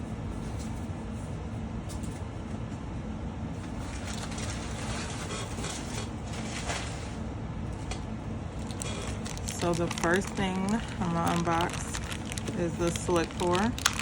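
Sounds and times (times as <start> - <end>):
low background rumble: 7.2 - 14.0
packaging rustling: 8.6 - 14.0.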